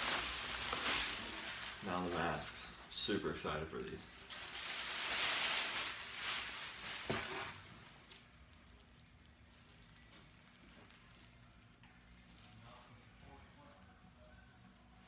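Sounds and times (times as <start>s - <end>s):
packaging rustling and crinkling: 0.0s - 2.6s, 4.2s - 7.7s.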